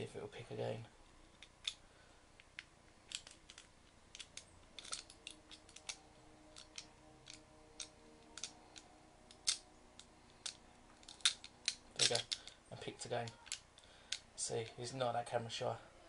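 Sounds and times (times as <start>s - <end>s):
metallic lock picking clicks: 1.4s - 1.8s, 2.4s - 12.6s, 13.2s - 14.2s.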